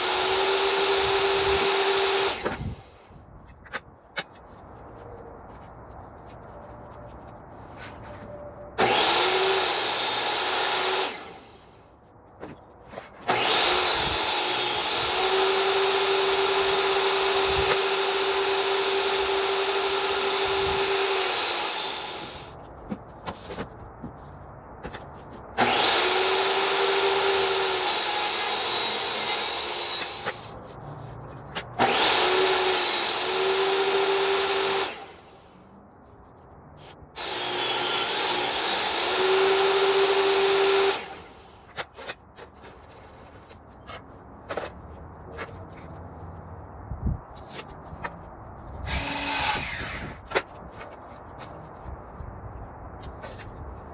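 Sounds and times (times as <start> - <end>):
power tool motor whine: 0.0 - 2.9, 8.8 - 11.6, 13.3 - 22.5, 25.6 - 30.5, 31.8 - 35.4, 37.2 - 41.4, 48.9 - 50.2
knocks and handling sounds: 12.1 - 13.3, 22.6 - 25.6, 41.7 - 46.6, 50.2 - 53.9.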